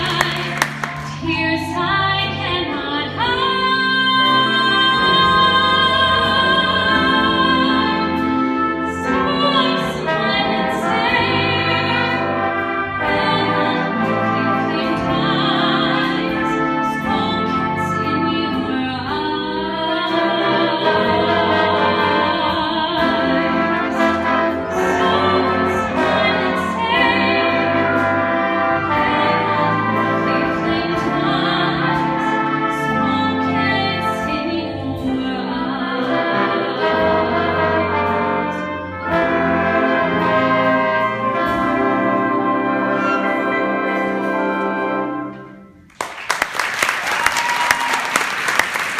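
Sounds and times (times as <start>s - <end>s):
jazz band with brass: 0.0s - 48.9s.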